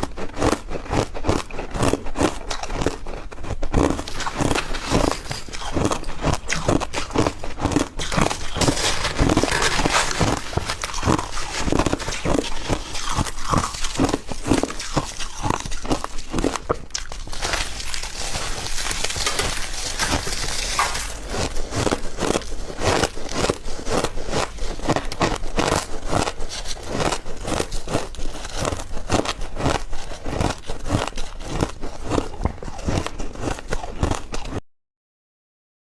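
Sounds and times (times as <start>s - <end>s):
ice being chewed: 0.0s - 34.6s.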